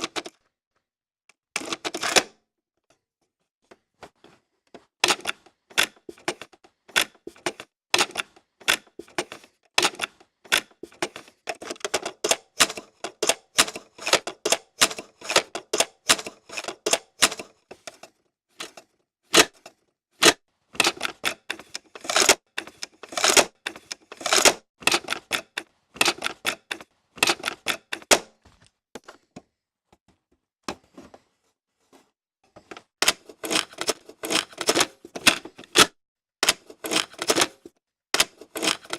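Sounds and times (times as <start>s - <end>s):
cassette mechanism clicking: 33.0s - 37.6s.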